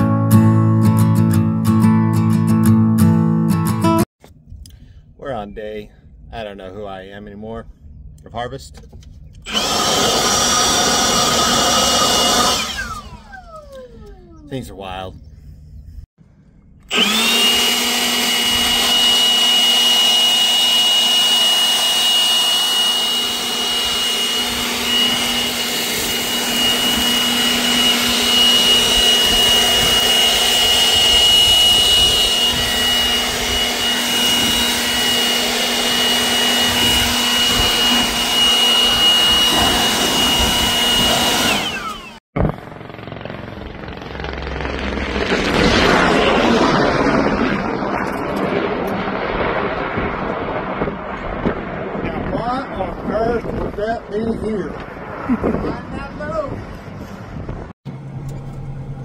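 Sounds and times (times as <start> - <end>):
harvest machinery whining: 9.0 - 15.8, 16.4 - 50.4, 57.9 - 59.0.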